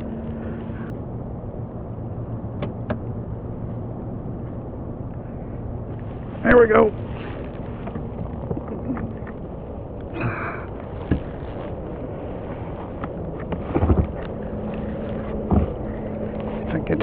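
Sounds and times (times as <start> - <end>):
water noise: 0.0 - 17.0
wind: 0.0 - 17.0.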